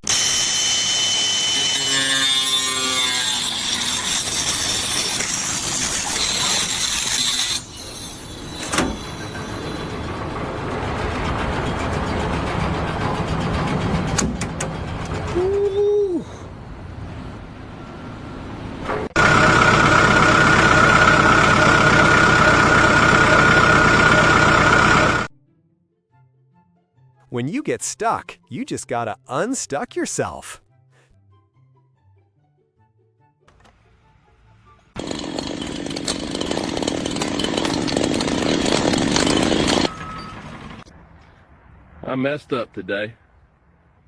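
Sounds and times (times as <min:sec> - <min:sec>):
machine engine whining and chugging: 0:07.6 - 0:25.3, 0:35.0 - 0:40.9.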